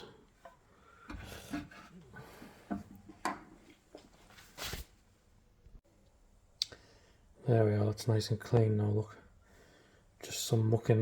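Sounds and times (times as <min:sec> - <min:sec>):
faint rubbing and scraping: 0:00.4 - 0:05.0.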